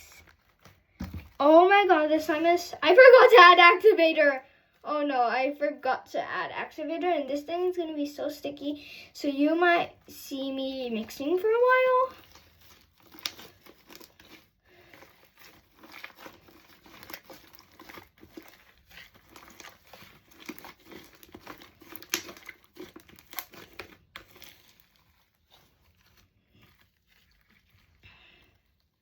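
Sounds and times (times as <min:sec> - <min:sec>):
small wet crackles and pops: 0:00.0 - 0:01.5, 0:11.0 - 0:29.0
hands kneading wet slime: 0:00.0 - 0:05.8, 0:06.8 - 0:29.0.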